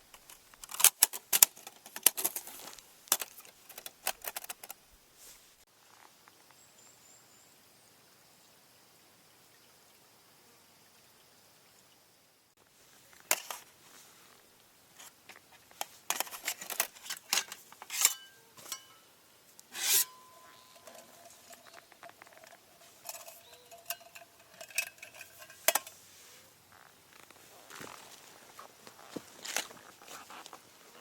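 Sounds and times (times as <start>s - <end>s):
metal utensils clinking: 15.8s - 19.1s, 19.7s - 26.0s
faint thin ringing: 17.1s - 26.0s.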